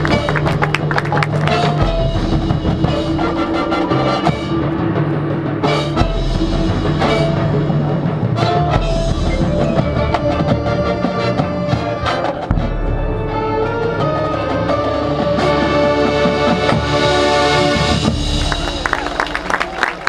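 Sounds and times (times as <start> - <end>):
loud percussion hits: 0.0 - 19.8
marching band playing: 0.0 - 20.0.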